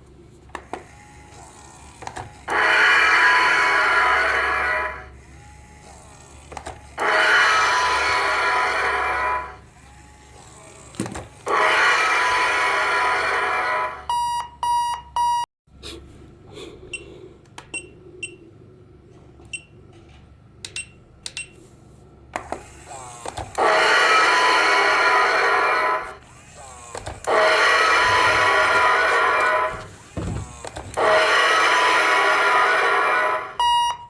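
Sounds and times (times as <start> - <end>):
short beeps: 14.1 - 15.5, 33.6 - 34.0.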